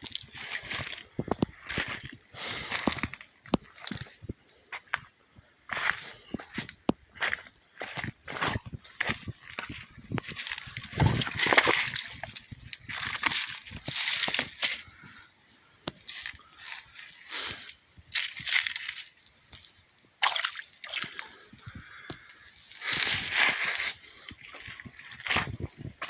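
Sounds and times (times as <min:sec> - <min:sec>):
creek water splashing: 0:20.2 - 0:22.1.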